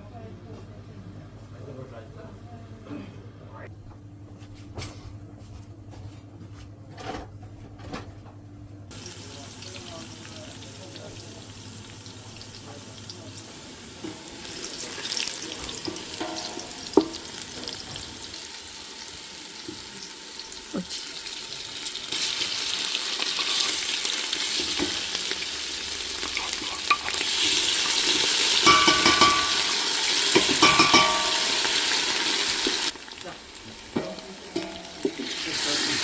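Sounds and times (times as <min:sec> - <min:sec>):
food frying in oil: 0:08.9 - 0:36.0
spoon scraping a pan: 0:23.2 - 0:25.0, 0:26.2 - 0:32.0.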